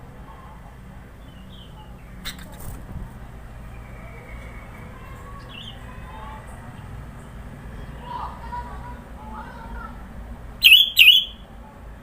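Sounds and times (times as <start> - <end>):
bird chirps: 10.6 - 11.4.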